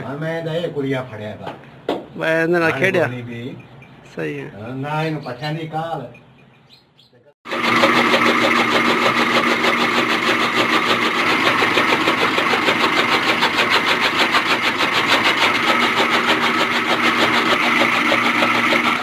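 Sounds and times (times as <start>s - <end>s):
motor running with fast pulse: 7.5s - 19.0s.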